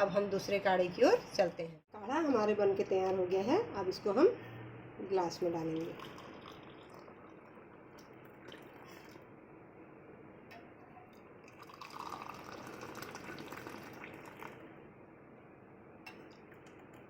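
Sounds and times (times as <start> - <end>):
liquid trickling into a glass: 5.8 - 9.2, 11.1 - 14.7.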